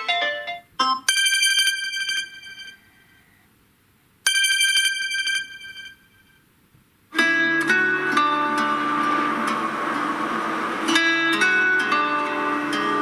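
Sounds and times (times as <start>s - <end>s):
lower ringtone notes: 0.0s - 3.2s, 4.2s - 6.4s
bright phone ringtone: 0.0s - 3.4s, 4.2s - 6.4s.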